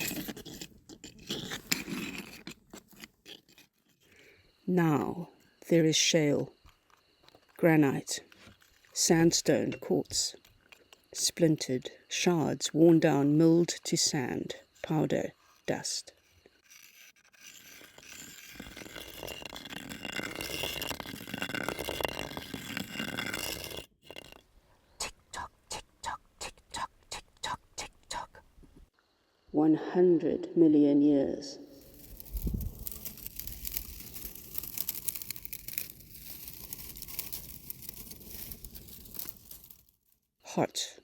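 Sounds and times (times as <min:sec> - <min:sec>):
sand and stone crackling: 0:00.0 - 0:05.4, 0:06.2 - 0:11.5, 0:12.6 - 0:24.5, 0:31.7 - 0:40.3.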